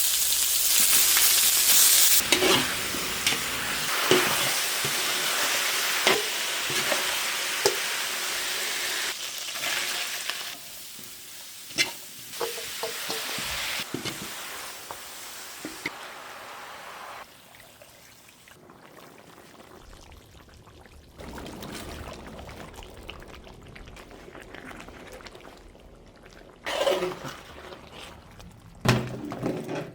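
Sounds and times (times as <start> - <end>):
meat sizzling in a pan: 0.0 - 17.3
utensil scraping a pan: 2.2 - 5.0, 11.7 - 14.4.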